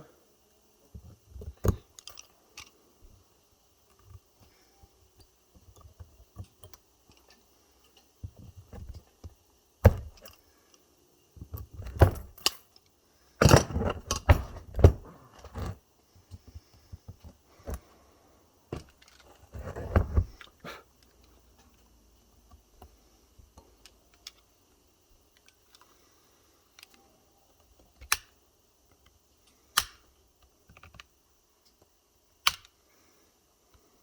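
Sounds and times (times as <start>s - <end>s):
pliers clicking and clattering on metal: 11.6s - 14.6s, 32.5s - 32.7s.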